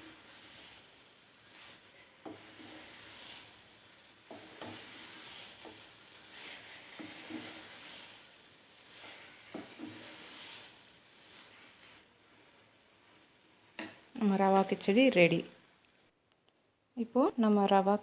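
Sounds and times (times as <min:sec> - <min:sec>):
spoon stirring thick food in pan: 0:00.0 - 0:14.2.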